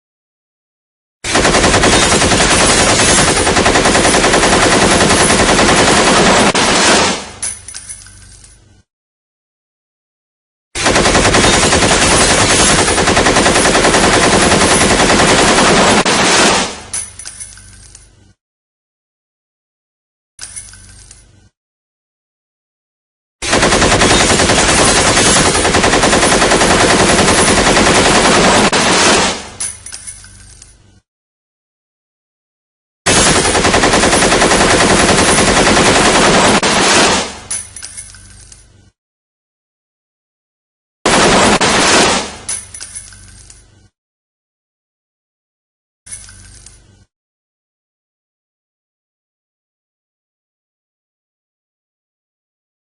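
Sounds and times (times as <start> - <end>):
rifle automatic fire: 1.3 - 7.4, 10.8 - 16.8, 23.4 - 29.6, 33.1 - 37.5, 41.1 - 42.5.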